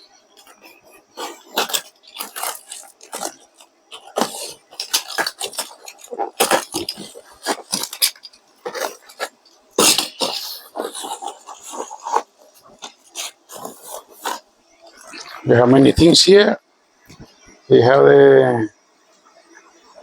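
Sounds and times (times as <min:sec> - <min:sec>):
parts scraping: 0:00.0 - 0:16.4
packing material rustling: 0:00.4 - 0:16.4.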